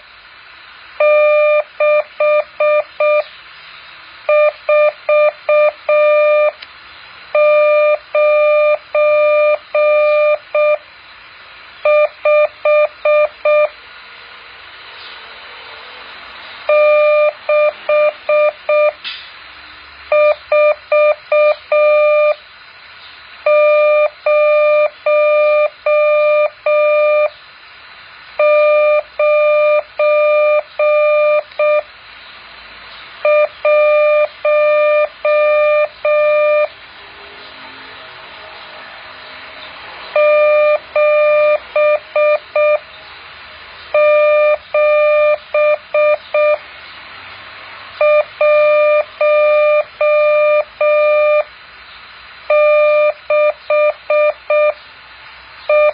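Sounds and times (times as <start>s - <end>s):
faint hiss: 0.0s - 42.1s, 42.8s - 55.7s
morse code beeps: 1.0s - 3.3s, 4.3s - 6.6s, 7.4s - 10.8s, 11.8s - 13.8s, 16.7s - 19.0s, 20.1s - 22.4s, 23.5s - 27.3s, 28.4s - 31.9s, 33.2s - 36.7s, 40.2s - 42.8s, 43.9s - 46.6s, 48.0s - 51.5s, 52.5s - 54.8s, 55.7s - 55.9s.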